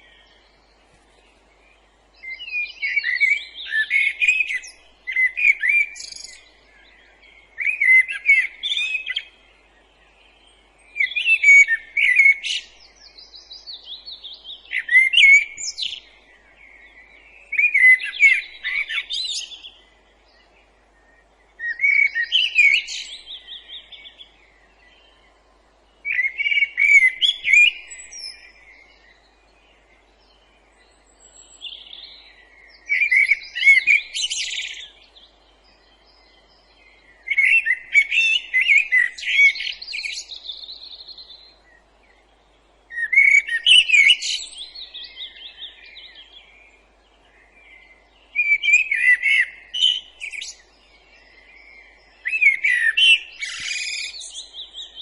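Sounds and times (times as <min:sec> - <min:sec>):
songbird warbling: 0:02.2 - 0:25.3, 0:26.0 - 0:41.9, 0:42.9 - 0:55.0.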